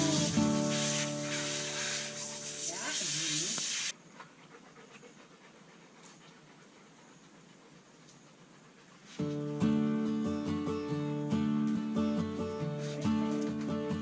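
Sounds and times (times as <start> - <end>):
loud spraying hiss: 0.0 - 4.0
dog panting faintly: 4.0 - 10.3.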